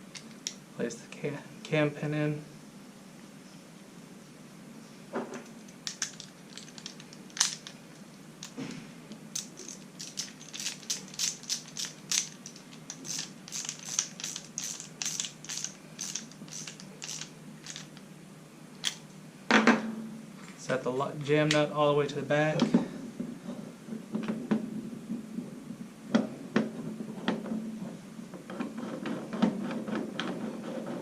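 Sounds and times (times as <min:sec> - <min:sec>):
tools and parts knocking: 0:05.9 - 0:07.7
ratchet wrench clicking: 0:09.4 - 0:17.9.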